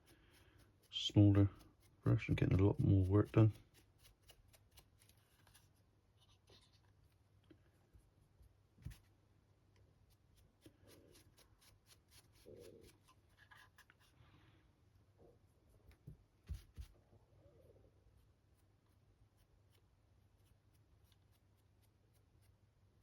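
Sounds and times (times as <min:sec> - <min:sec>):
stiff brush scratching: 0:00.0 - 0:07.2, 0:10.0 - 0:14.2, 0:18.1 - 0:22.6.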